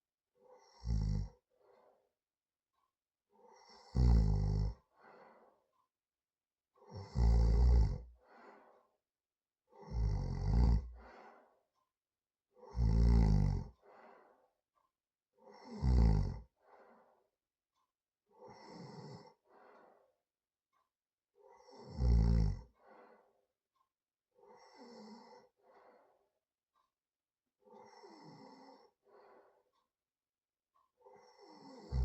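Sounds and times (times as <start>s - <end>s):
soft breath sound: 0.4s - 2.1s, 4.8s - 5.8s, 8.1s - 9.0s, 10.9s - 11.8s, 13.7s - 14.6s, 16.5s - 17.3s, 18.3s - 20.2s, 22.7s - 23.5s, 24.4s - 26.4s, 27.6s - 29.9s
person snoring heavily: 0.6s - 1.3s, 3.6s - 4.8s, 6.9s - 8.0s, 9.8s - 10.9s, 12.7s - 13.7s, 15.6s - 16.4s, 21.7s - 22.6s, 31.3s - 32.0s.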